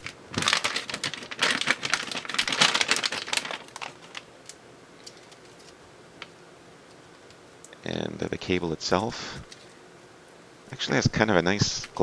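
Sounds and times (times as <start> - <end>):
plastic packaging crinkling: 0.0 - 6.4.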